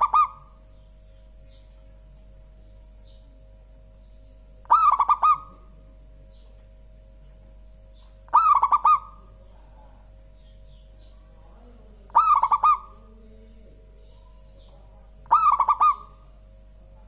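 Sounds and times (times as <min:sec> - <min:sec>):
dove cooing: 0:00.0 - 0:00.6, 0:04.6 - 0:06.0, 0:08.2 - 0:10.2, 0:11.2 - 0:16.5.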